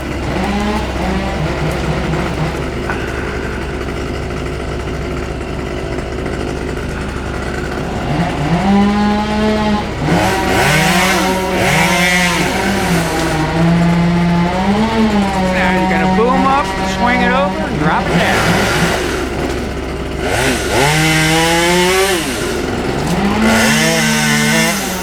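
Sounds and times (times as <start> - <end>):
small chainsaw engine revving: 0.0 - 25.0
chain cutting wood: 20.3 - 25.0.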